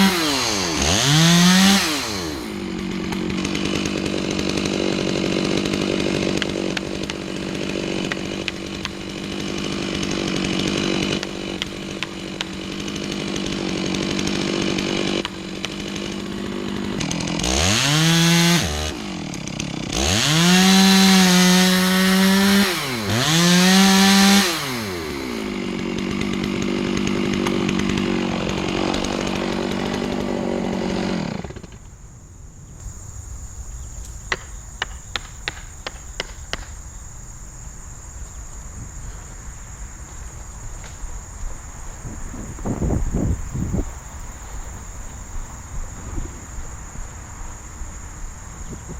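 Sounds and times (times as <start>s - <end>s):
chainsaw idling and revving: 0.0s - 32.0s, 34.3s - 36.7s.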